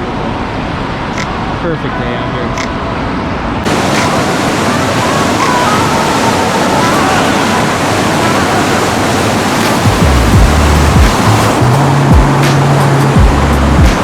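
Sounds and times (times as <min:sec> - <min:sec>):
waves breaking: 0:00.0 - 0:14.0
low music: 0:09.7 - 0:14.0.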